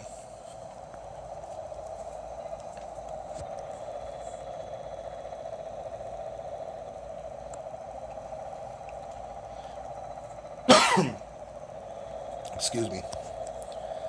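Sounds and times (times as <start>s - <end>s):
droning hum: 0.0s - 14.0s
person clearing throat: 10.7s - 11.2s.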